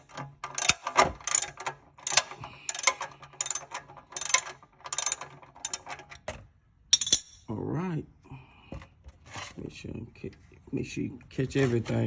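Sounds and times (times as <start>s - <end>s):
ratchet wrench clicking: 0.6s - 5.9s.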